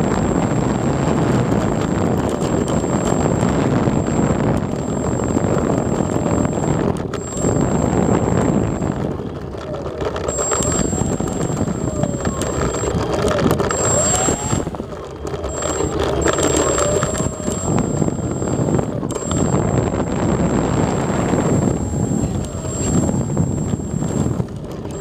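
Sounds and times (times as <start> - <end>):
electric motor and propeller whine: 0.0 - 25.0
thin high whine: 0.0 - 25.0
wind rush over plane: 0.0 - 25.0.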